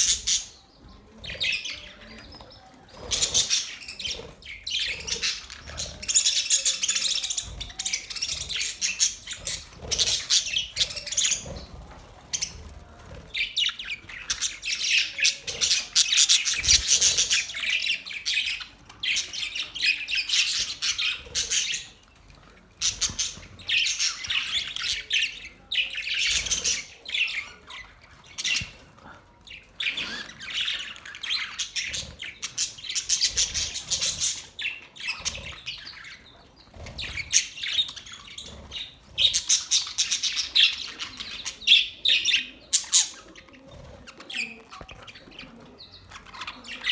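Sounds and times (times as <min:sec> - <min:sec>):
budgerigars chirping: 0:00.0 - 0:22.2, 0:29.5 - 0:46.9.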